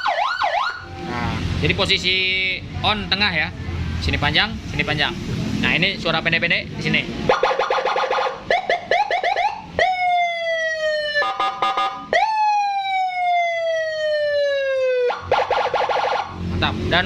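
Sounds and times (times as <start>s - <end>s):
electronic siren wailing and chirping: 0.0s - 1.5s, 7.3s - 16.4s.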